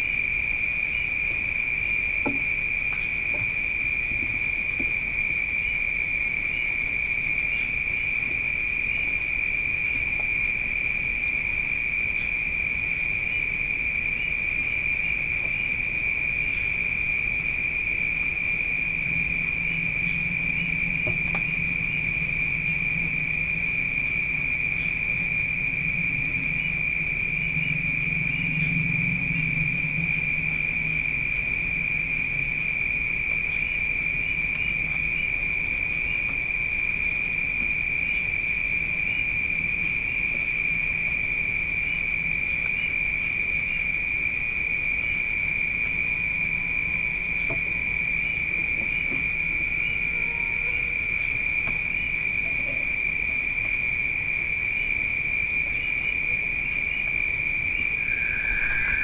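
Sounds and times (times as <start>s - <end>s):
crickets chirring: 0.0s - 59.0s
low hum: 57.3s - 59.0s.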